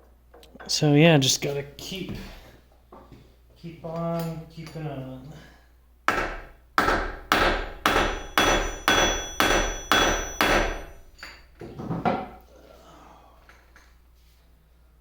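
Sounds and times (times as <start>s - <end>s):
hammer striking metal shaft: 6.1s - 11.4s.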